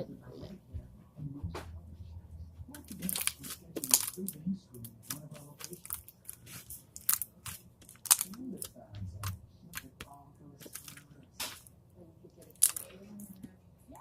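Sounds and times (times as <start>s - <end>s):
slime squishing with wet pops: 2.7s - 11.7s, 12.5s - 13.5s.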